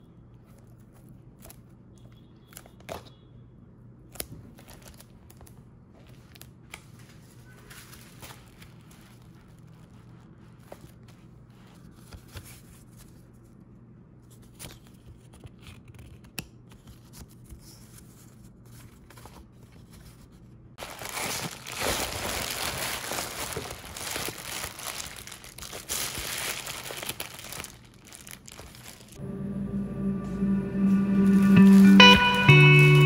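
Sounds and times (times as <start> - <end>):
packaging crinkled and torn: 4.4 - 11.3, 20.8 - 29.2.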